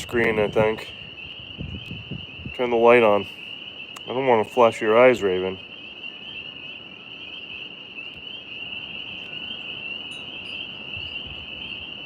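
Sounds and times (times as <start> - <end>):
wind rumble on microphone: 0.0 - 3.4, 8.2 - 12.0
crickets chirring: 0.0 - 12.0.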